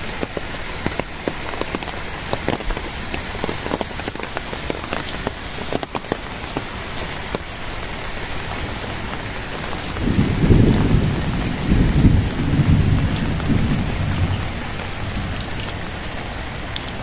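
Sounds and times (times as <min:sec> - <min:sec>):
heavy rain: 0:00.0 - 0:17.0
raindrop hits: 0:00.0 - 0:17.0
thunder rumble: 0:09.5 - 0:17.0.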